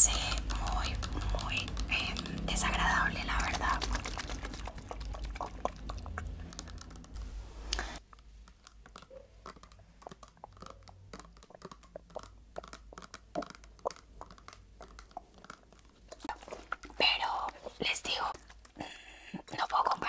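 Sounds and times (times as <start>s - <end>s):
quick light taps and clicks: 0.0s - 5.7s.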